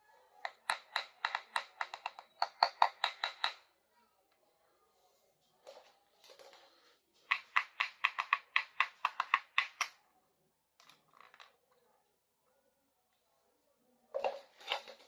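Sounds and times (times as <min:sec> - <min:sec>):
small plastic toy pieces clicking: 0:00.5 - 0:03.6, 0:07.3 - 0:09.9.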